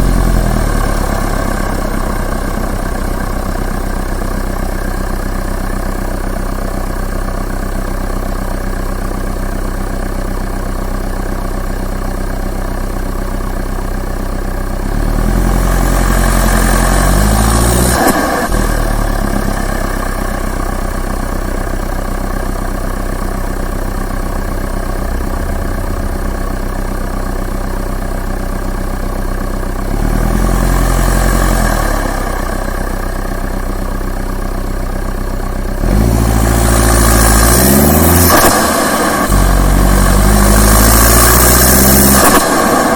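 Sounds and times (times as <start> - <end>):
turbo diesel engine idling and revving: 0.0 - 42.9
turbo flutter: 24.1 - 27.9.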